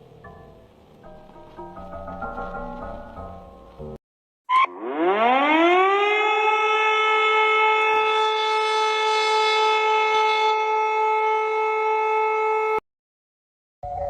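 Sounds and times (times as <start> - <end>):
emergency alert siren tone: 4.5 - 12.8.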